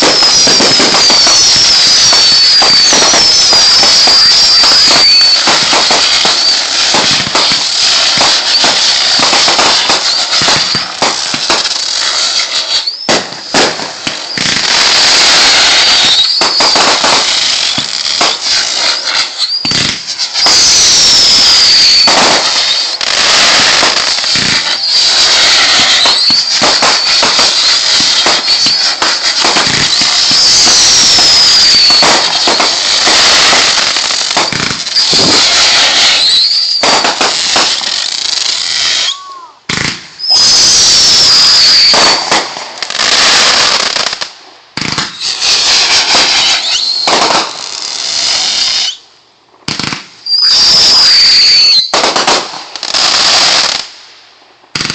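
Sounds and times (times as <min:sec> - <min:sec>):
fireworks crackling and popping: 0:00.0 - 0:54.9
fireworks whistling: 0:00.0 - 0:54.9.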